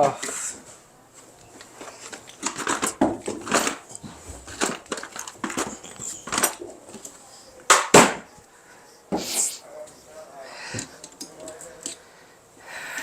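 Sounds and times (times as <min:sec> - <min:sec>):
tools clicking and knocking: 0:02.0 - 0:07.1, 0:10.8 - 0:12.0.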